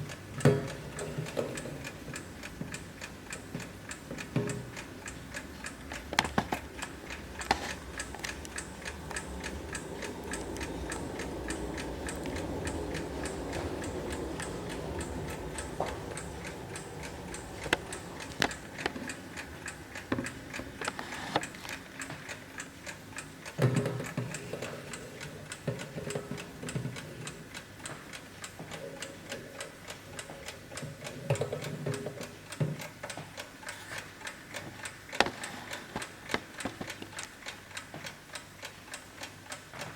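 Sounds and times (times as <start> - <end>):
alarm clock ticking: 0.0 - 39.9.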